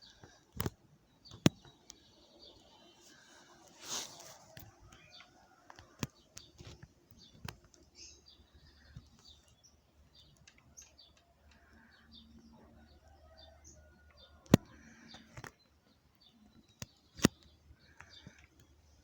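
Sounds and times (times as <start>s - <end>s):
birds chirping: 0.0s - 19.0s
sharp clicks: 4.5s - 7.9s, 16.7s - 18.8s.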